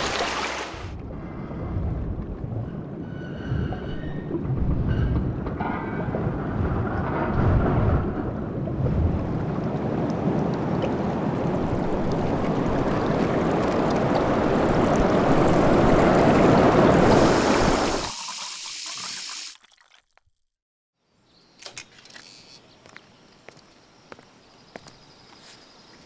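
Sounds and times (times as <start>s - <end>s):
rushing water: 0.0s - 1.0s, 8.9s - 20.0s.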